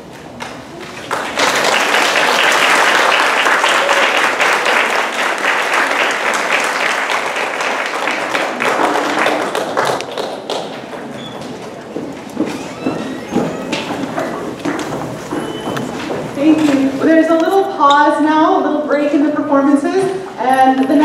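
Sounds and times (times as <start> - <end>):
audience applauding: 0.4 - 16.3.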